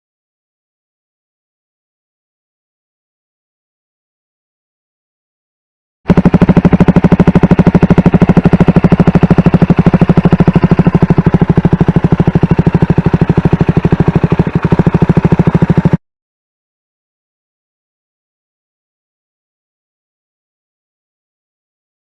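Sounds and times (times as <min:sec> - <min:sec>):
motorcycle engine idling: 0:06.1 - 0:16.0.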